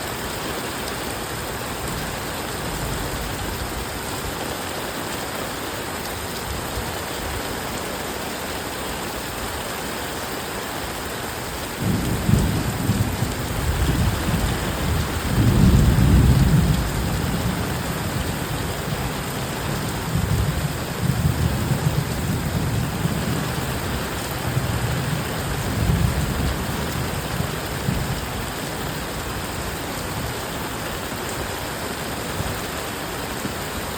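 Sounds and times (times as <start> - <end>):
heavy rain: 0.0 - 33.9
thunder rumbling: 11.8 - 19.0.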